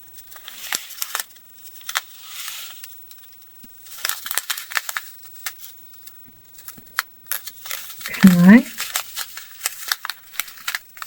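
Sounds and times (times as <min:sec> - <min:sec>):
plastic bag rustle: 0:07.4 - 0:11.0.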